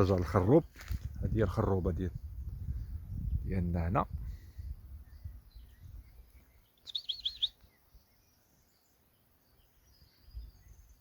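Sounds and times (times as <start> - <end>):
bird calling high notes: 6.8 - 7.7.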